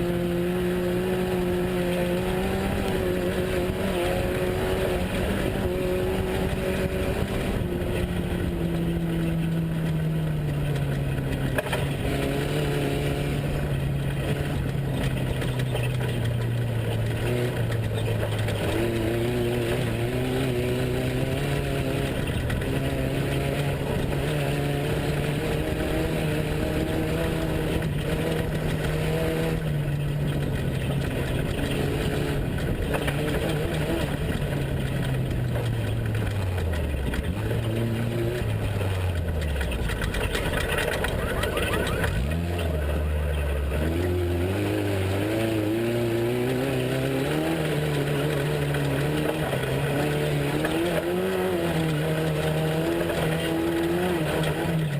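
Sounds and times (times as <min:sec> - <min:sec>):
truck engine revving: 0:00.0 - 0:54.9.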